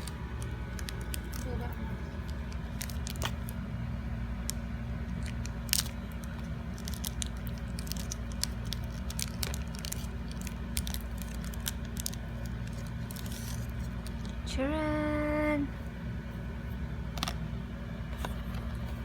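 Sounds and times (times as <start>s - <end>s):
steady low hum: 0.0s - 19.0s
clicks and crinkles of box packaging: 2.2s - 3.6s, 5.1s - 14.4s.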